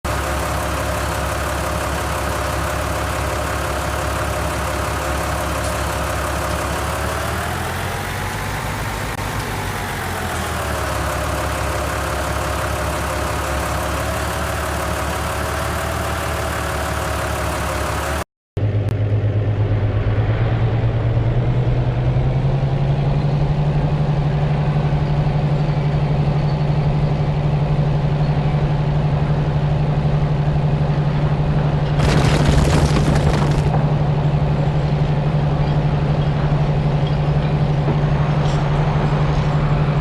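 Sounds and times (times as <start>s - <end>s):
heavy machine engine running: 0.0s - 40.0s.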